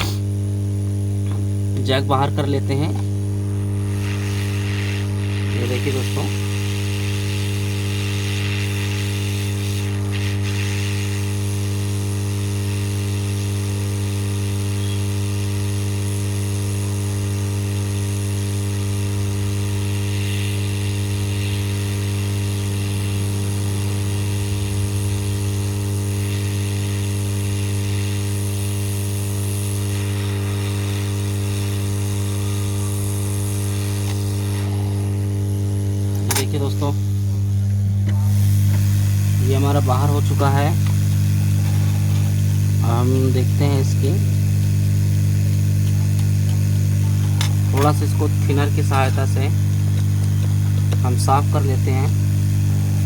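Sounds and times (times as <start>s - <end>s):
hot-air station blowing: 0.0s - 53.0s
low hum: 23.9s - 26.5s.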